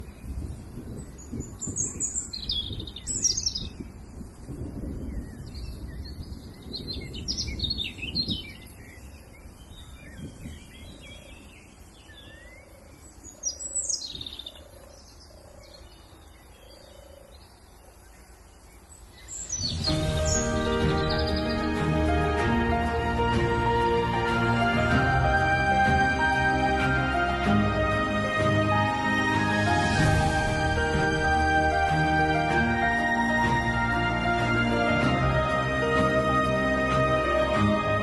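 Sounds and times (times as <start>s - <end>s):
birds chirping and trilling: 0.0s - 38.0s
low rumbling noise: 19.6s - 38.0s
music: 19.7s - 38.0s.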